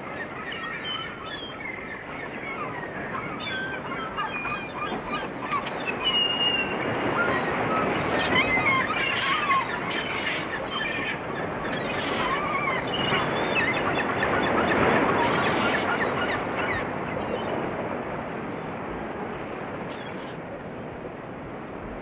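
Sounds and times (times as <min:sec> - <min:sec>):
birds chirping and squawking: 0:02.3 - 0:17.5.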